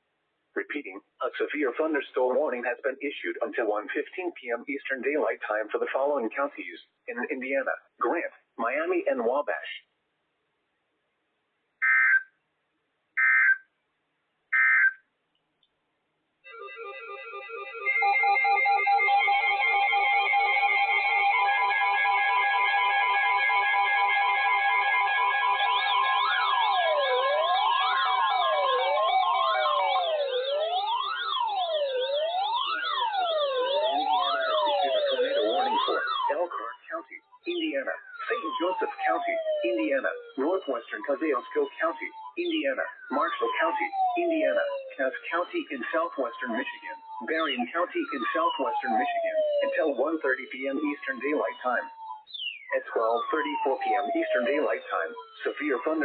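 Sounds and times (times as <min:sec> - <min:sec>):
electronic siren wail: 0:11.8 - 0:12.3, 0:13.2 - 0:13.7, 0:14.5 - 0:15.0, 0:16.5 - 0:56.0
fast siren sweeps: 0:11.8 - 0:12.3, 0:13.2 - 0:13.6, 0:14.6 - 0:15.0, 0:16.6 - 0:56.0.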